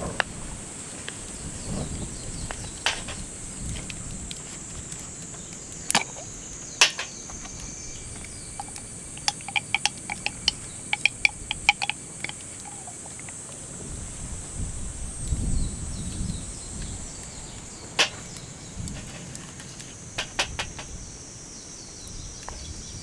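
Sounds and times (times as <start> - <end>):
sharp clicks: 5.0 - 13.4
clicks and taps: 5.9 - 13.4, 18.0 - 20.9.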